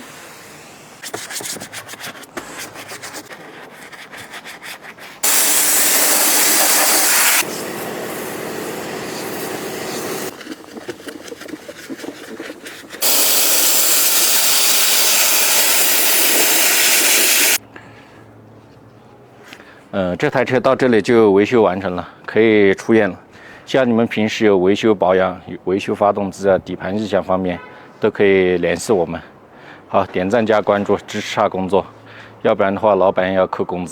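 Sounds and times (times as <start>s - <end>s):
spraying hiss: 5.2s - 10.3s, 13.0s - 17.6s
scrubbing strokes: 9.0s - 13.9s.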